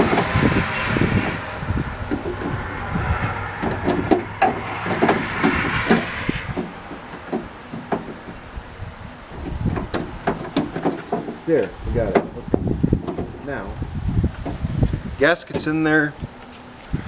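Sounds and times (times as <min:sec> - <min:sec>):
steady rushing noise: 0:00.0 - 0:17.0.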